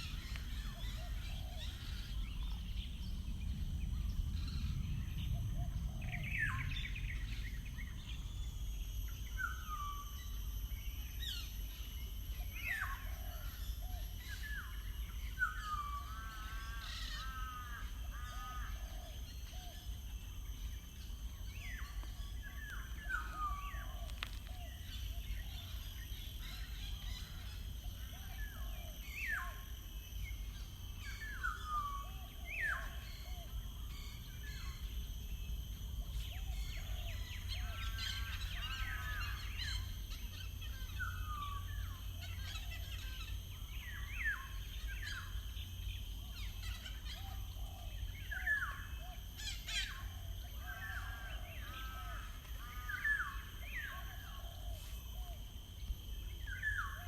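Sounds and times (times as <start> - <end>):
low background rumble: 0.0 - 9.7.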